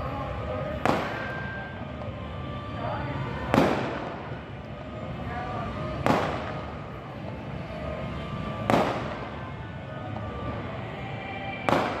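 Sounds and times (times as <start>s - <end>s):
steady background noise: 0.0s - 12.0s
firecracker bangs: 0.8s - 1.6s, 3.5s - 4.3s, 6.0s - 6.7s, 8.6s - 9.4s, 11.6s - 12.0s.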